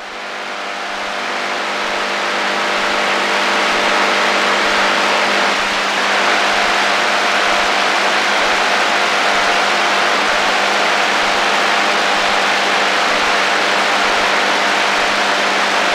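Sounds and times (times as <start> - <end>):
radio static hiss: 0.4 - 15.9.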